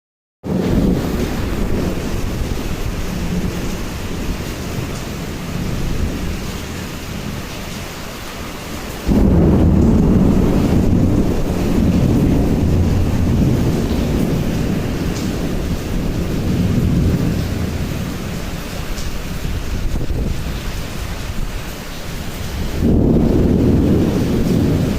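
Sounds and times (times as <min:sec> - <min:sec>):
rain: 0:00.4 - 0:24.9
strong wind roaring: 0:00.4 - 0:24.9
wind rumble on microphone: 0:00.5 - 0:24.9.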